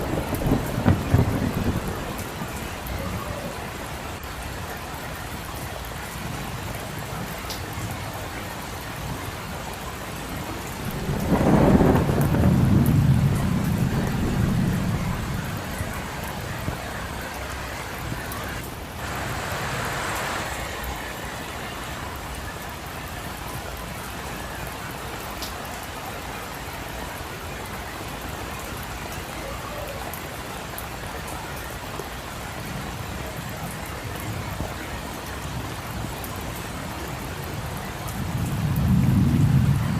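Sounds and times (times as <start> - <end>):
thunder rumbling: 0.0 - 4.2, 10.3 - 22.8, 35.4 - 39.9
steady rain falling: 0.0 - 39.9.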